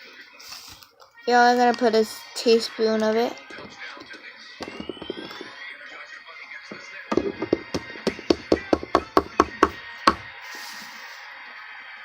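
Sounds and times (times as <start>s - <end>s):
teaspoon tapping a container: 6.7s - 10.3s.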